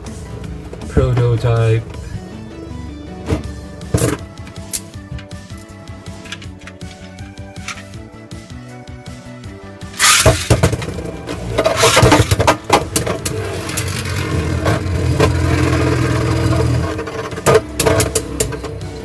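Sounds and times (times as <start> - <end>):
background music: 0.0 - 19.0
spinning tops clashing and scraping: 6.2 - 8.0, 10.0 - 19.0
spinning top launch rush: 10.0 - 10.8
spinning hum: 10.0 - 19.0.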